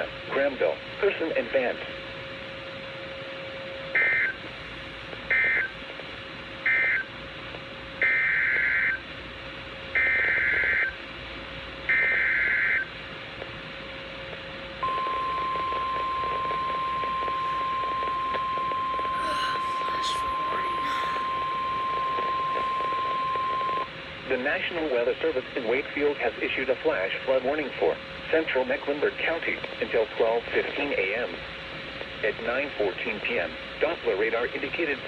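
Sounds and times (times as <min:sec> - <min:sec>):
steady warning alarm tone: 0:14.8 - 0:23.9.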